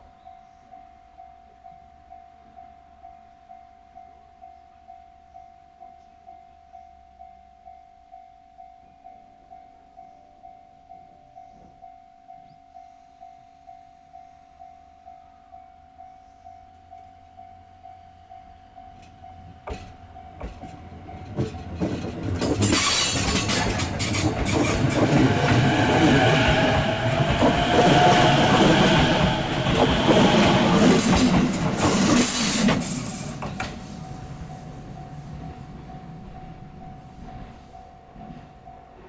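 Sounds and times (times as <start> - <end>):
railroad crossing bell ringing: 0.0 - 39.0
electric train passing: 16.7 - 39.0
train flange squeal: 18.0 - 39.0.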